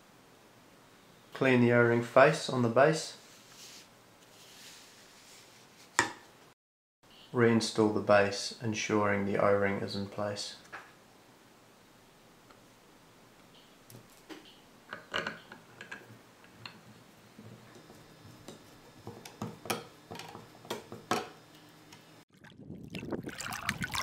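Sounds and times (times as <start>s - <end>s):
running water: 22.3s - 24.0s.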